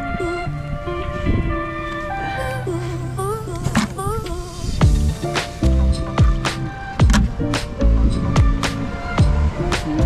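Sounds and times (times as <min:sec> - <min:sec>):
electronic music with bass and drums: 0:03.0 - 0:10.0.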